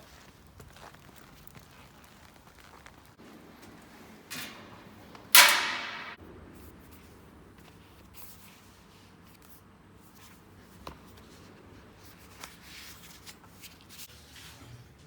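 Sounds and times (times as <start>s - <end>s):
faint rustling and handling: 6.9s - 14.8s.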